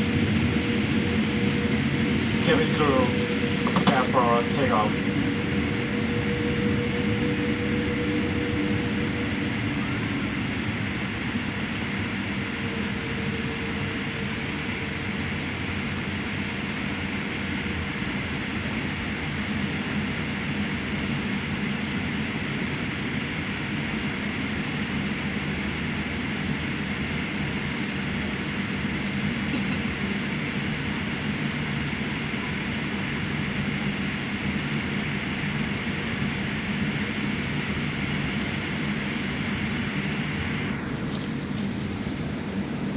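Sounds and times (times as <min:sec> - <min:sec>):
jet engine cabin drone: 0:00.0 - 0:42.9
faint higher tone: 0:02.6 - 0:15.0.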